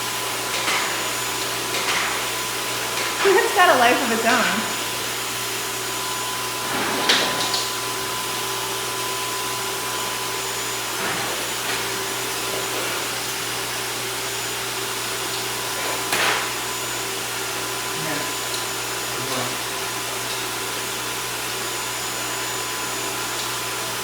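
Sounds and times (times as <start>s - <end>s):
blow dryer whirring: 0.0s - 24.0s.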